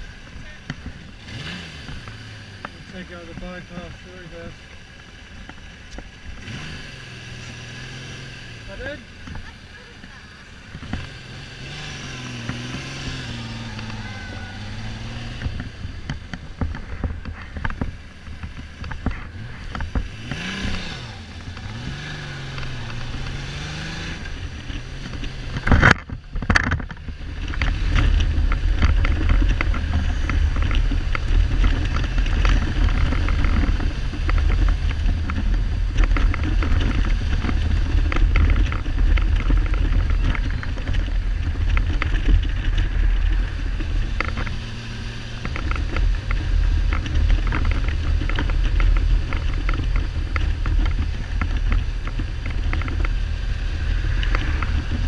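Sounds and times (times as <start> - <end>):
wind noise on microphone: 10.8 - 55.0
motorcycle engine misfiring: 12.4 - 55.0.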